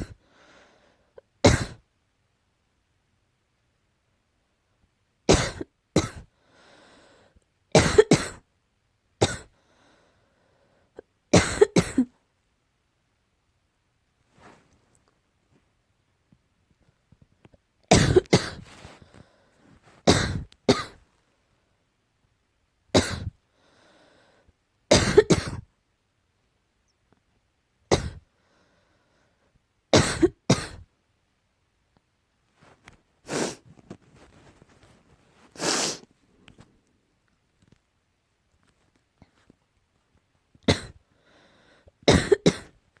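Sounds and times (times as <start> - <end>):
faint breath: 0.1 - 1.2, 6.3 - 7.4, 9.5 - 11.0, 18.6 - 20.0, 23.5 - 24.6, 28.3 - 29.6, 41.0 - 42.0
person coughing: 1.4 - 1.8, 5.3 - 6.3, 7.8 - 8.4, 9.2 - 9.5, 11.4 - 12.2, 17.9 - 18.6, 20.1 - 21.0, 23.0 - 23.4, 24.9 - 25.7, 27.9 - 28.2, 30.0 - 30.9, 40.7 - 41.0, 42.1 - 42.8.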